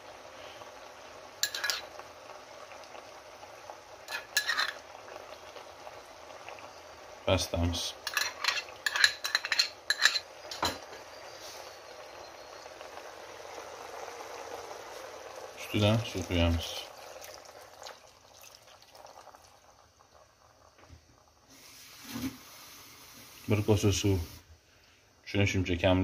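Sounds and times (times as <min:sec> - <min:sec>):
faint sizzle: 0:00.0 - 0:26.0
spoon clinking against a pot: 0:01.4 - 0:01.9, 0:04.1 - 0:04.8, 0:08.0 - 0:11.0.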